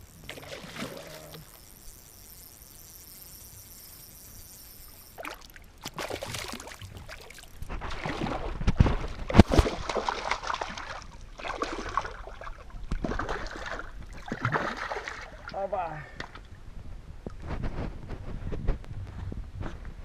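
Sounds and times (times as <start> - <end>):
fish thrashing water splashing: 0.2 - 1.6, 5.1 - 15.4.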